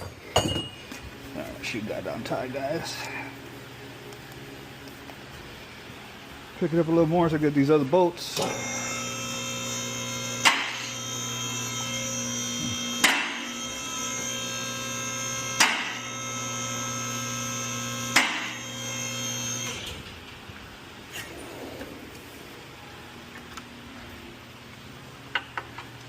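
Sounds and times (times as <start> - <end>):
vehicle lift motor running: 8.3 - 20.2.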